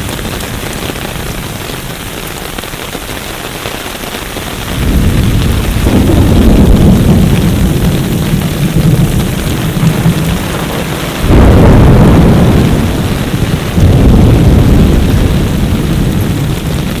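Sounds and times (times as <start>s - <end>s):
heavy rain pouring: 0.0s - 17.0s
loud low rumble: 4.7s - 17.0s.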